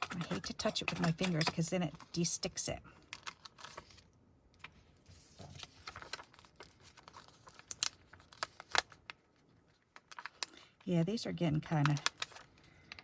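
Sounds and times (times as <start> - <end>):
paper crinkling and rustling: 3.0 - 10.5, 11.5 - 13.0.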